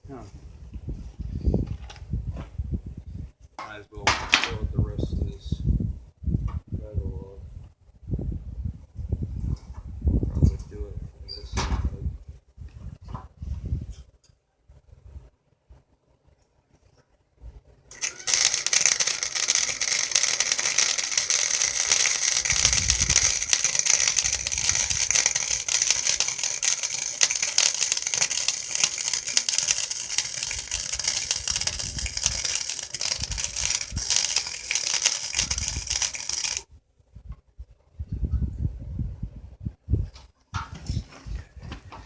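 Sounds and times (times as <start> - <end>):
arc welder crackling sizzle: 17.9 - 36.7.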